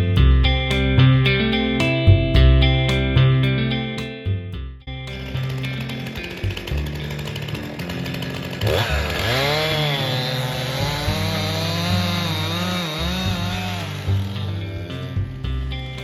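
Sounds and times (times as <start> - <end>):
background music with low notes: 0.0 - 16.0
chainsaw cutting into tree: 5.1 - 16.0.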